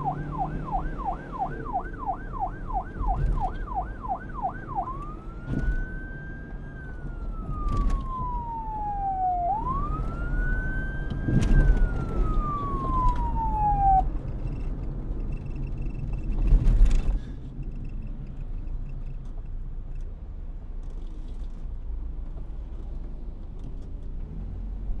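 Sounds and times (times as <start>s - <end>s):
police siren wailing: 0.0s - 14.1s.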